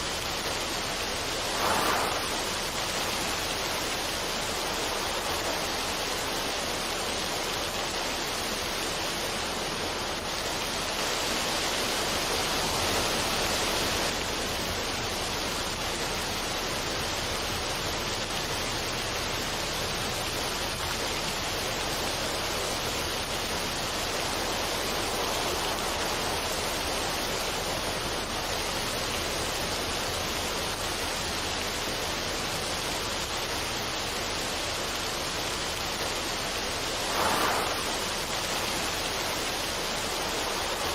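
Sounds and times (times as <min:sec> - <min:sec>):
water rushing over rocks: 0:00.0 - 0:40.9.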